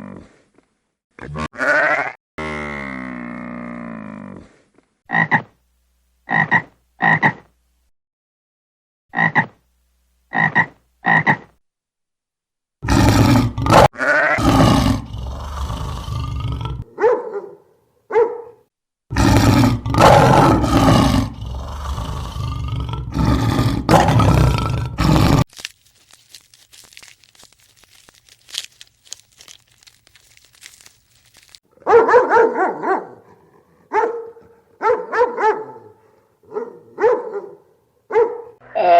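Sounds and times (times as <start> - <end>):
animal grunts: 12.8 - 16.9, 19.1 - 25.4
large animal roaring: 12.8 - 16.9, 19.1 - 25.4.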